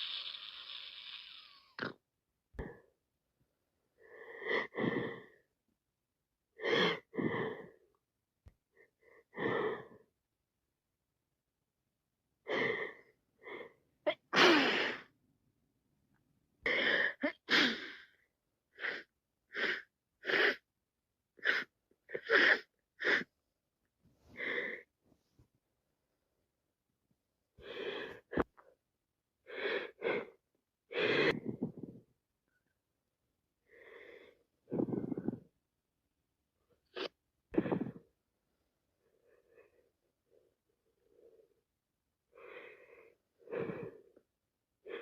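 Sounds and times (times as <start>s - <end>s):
person sneezing: 14.1s - 15.1s.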